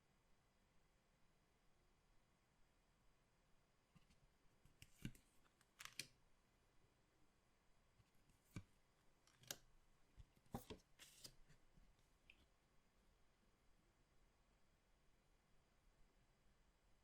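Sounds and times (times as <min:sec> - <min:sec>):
soft clicks of card handling: 0:04.0 - 0:06.2, 0:08.0 - 0:11.6.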